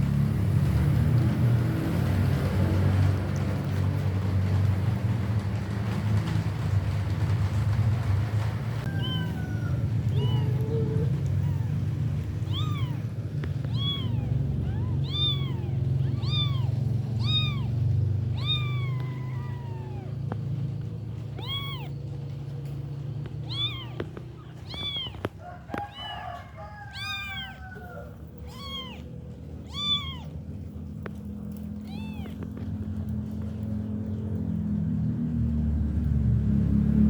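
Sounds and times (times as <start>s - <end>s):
low steady rumble: 0.0s - 37.0s
kitten mewing: 8.9s - 22.2s, 23.2s - 33.1s.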